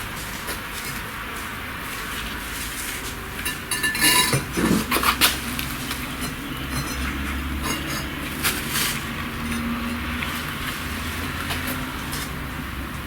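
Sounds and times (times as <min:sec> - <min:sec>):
trowel and bricks clinking: 0:06.2 - 0:10.1.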